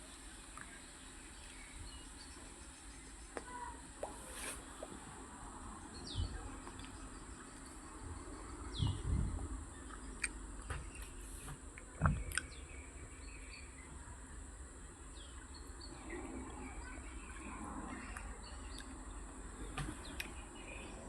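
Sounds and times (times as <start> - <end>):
steady hiss: 0.0 - 11.8
constant high drone: 0.0 - 21.0
wind buffeting microphone: 5.1 - 11.0
bird chirps: 5.9 - 21.0.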